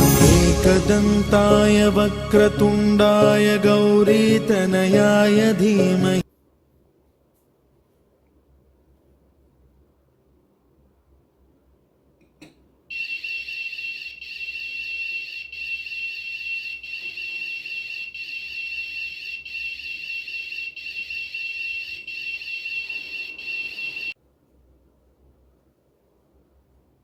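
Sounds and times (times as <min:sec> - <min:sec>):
warbling buzzer alarm: 0:12.9 - 0:24.2.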